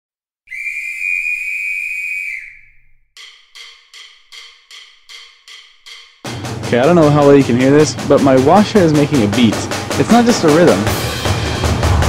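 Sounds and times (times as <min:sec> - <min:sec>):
whistle long blast: 0:00.5 - 0:03.4
drumsticks clicking a count-off: 0:03.2 - 0:08.0.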